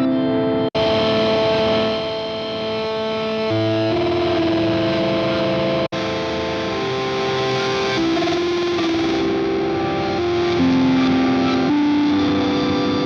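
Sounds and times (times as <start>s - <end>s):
distorted synthesizer notes: 0.0s - 13.0s.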